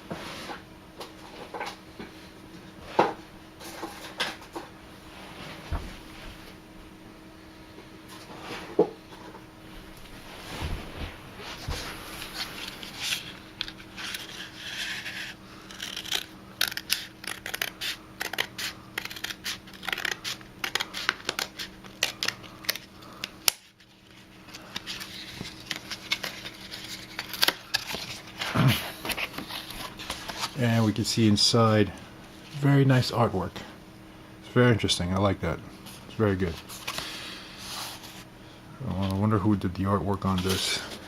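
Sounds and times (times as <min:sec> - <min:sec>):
cardboard rustling and scraping: 0:08.1 - 0:22.8, 0:23.8 - 0:30.8, 0:37.6 - 0:38.3.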